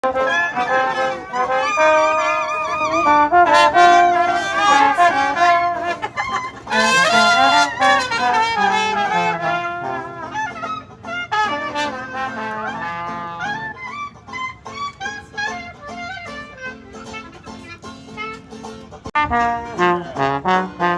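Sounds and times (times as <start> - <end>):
brass band playing jazz: 0.0 - 13.9, 19.1 - 20.9.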